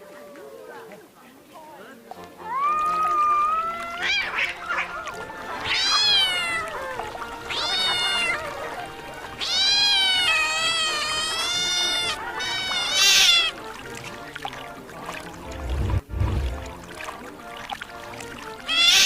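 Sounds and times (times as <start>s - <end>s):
cat meowing: 2.4s - 13.6s, 18.7s - 19.0s.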